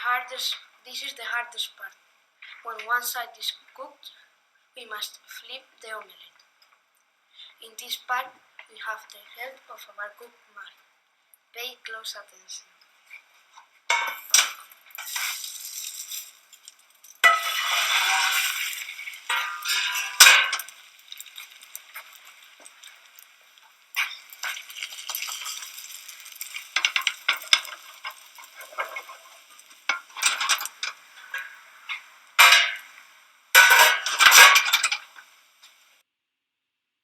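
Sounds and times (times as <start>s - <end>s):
omelette sizzling in oil: 12.8s - 36.0s
frying pan clattering and scraping: 13.9s - 35.3s.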